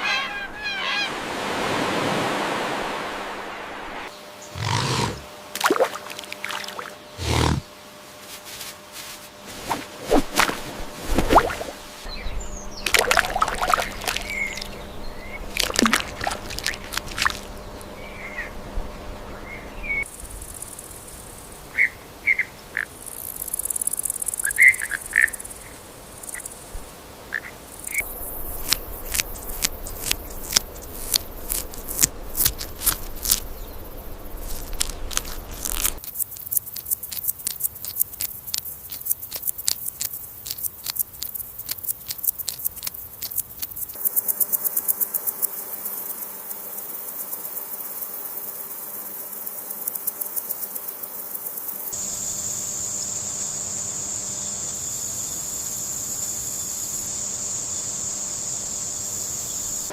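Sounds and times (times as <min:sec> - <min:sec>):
bird chirping: 0:12.0 - 0:15.5.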